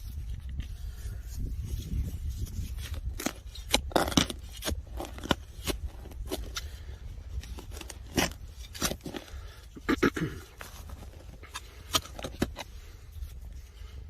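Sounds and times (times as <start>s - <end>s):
wind rumble on microphone: 0.0s - 9.2s
digging tool scraping soil: 0.0s - 13.8s.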